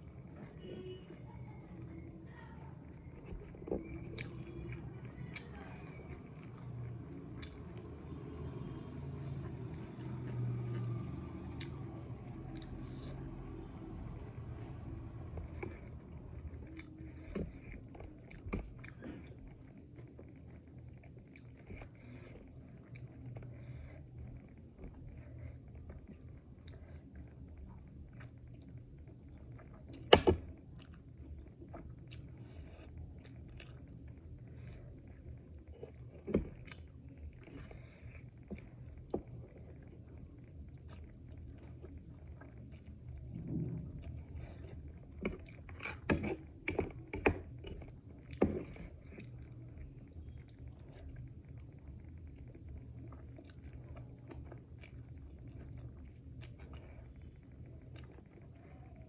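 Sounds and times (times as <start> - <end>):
low steady hum: 0.0 - 59.0
chewing and biting: 9.2 - 59.0.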